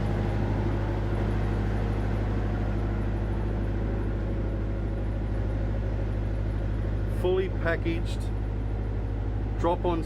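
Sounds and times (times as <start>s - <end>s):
low machinery hum: 0.0s - 10.0s.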